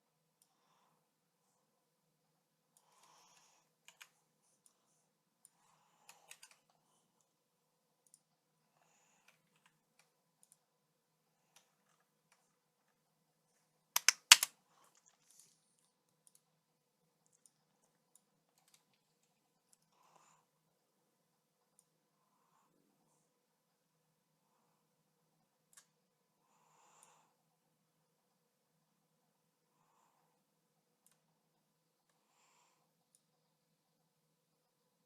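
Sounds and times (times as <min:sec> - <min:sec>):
computer mouse clicks: 0:02.7 - 0:04.8, 0:05.4 - 0:07.4, 0:08.0 - 0:08.3, 0:09.2 - 0:10.7, 0:14.0 - 0:14.5, 0:15.8 - 0:16.6, 0:17.2 - 0:19.9, 0:25.7 - 0:26.0, 0:31.0 - 0:31.3.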